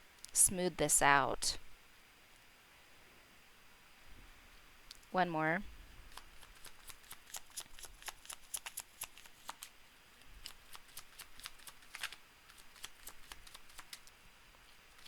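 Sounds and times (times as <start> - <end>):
cards being shuffled: 6.1 - 9.7, 10.4 - 14.1.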